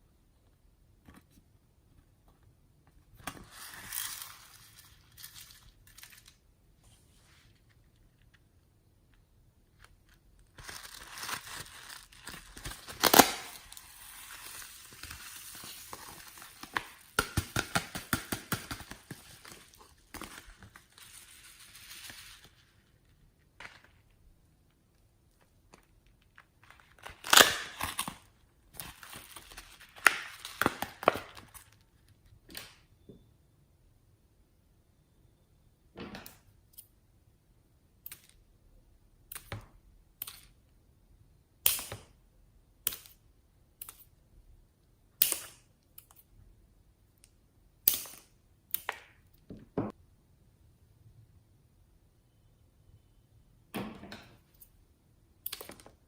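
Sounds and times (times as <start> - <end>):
slime materials crinkling: 9.7 - 32.0.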